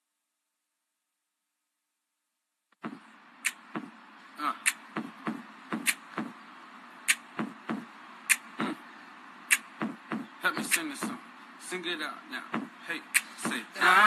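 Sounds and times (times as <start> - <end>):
steady hiss: 2.8 - 14.0.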